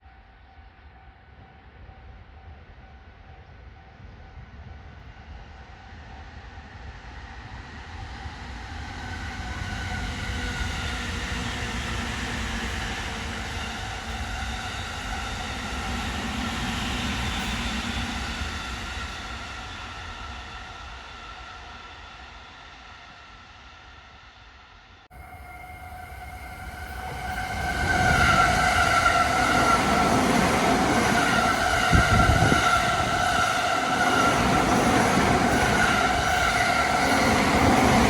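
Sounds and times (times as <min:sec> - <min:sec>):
electric train passing: 0:25.1 - 0:38.0.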